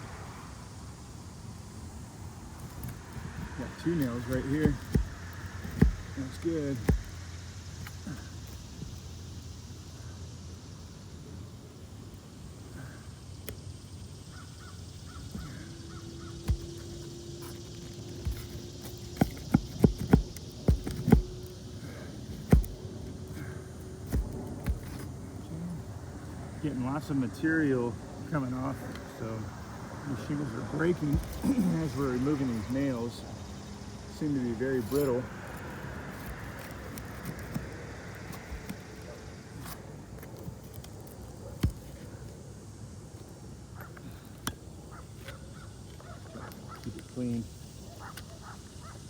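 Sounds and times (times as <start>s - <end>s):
outdoor background noise: 0.0s - 49.0s
shingles cracking: 2.5s - 9.0s, 15.1s - 25.2s, 31.0s - 32.8s, 34.8s - 42.1s.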